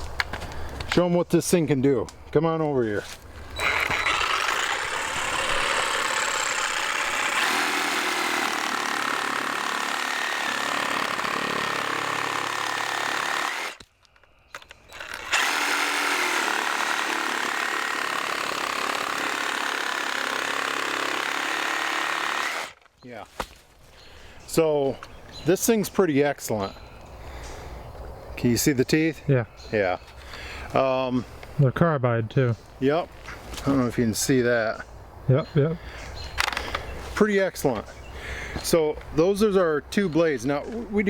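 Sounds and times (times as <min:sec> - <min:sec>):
reciprocating saw cutting wood: 0:03.6 - 0:13.8, 0:15.0 - 0:22.8.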